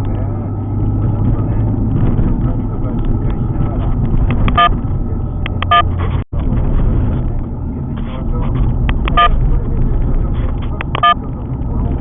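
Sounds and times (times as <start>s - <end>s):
car engine rumble: 0.0s - 12.0s
road noise: 0.0s - 12.0s.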